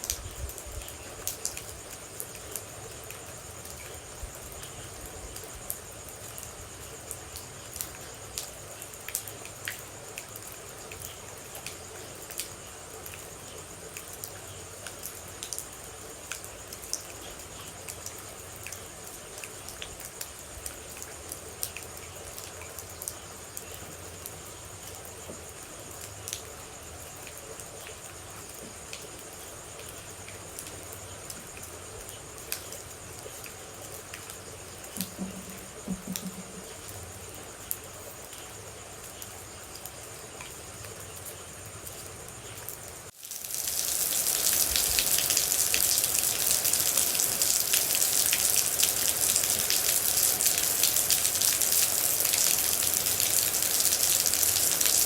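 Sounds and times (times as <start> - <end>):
high insect trill: 0.0 - 55.0
light rain: 0.0 - 55.0
water drops ticking: 34.9 - 37.1.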